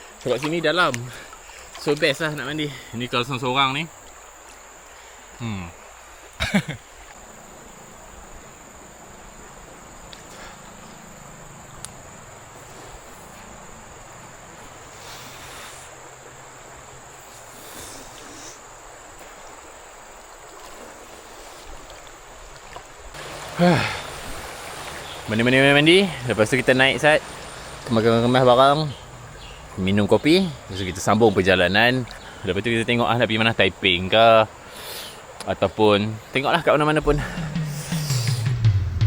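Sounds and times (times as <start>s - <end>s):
river water flowing: 0.0s - 38.5s
high-pitched insect drone: 37.0s - 38.5s.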